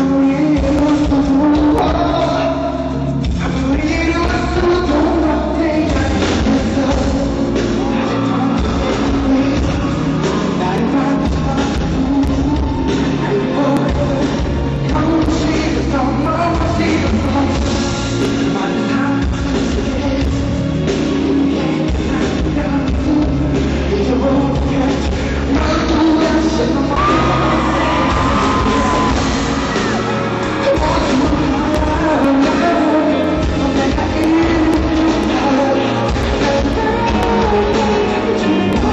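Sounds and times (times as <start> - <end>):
live band with singer: 0.0 - 38.9
crowd yelling: 7.4 - 16.2, 25.8 - 33.6.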